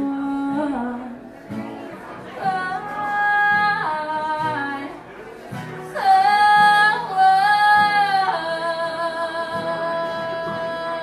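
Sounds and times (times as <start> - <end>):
woman singing a country ballad: 0.0 - 1.3, 2.4 - 5.0, 5.7 - 11.0
strummed acoustic guitar: 0.0 - 11.0.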